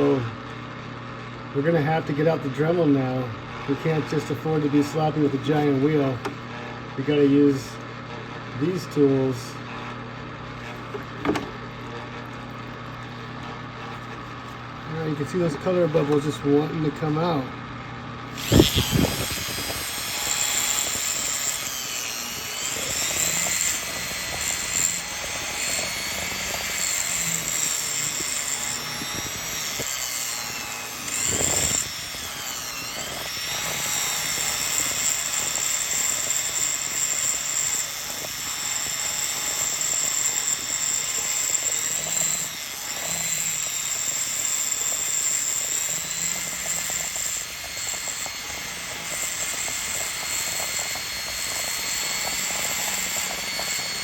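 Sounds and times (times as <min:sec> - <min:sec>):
rotary tool grinding stone: 0:18.3 - 0:54.0.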